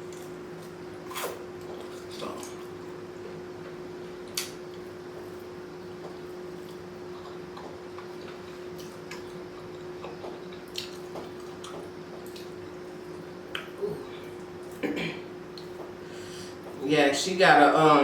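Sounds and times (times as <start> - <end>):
steady low hum: 0.0 - 18.0
wet chewing mouth sounds: 6.6 - 12.6.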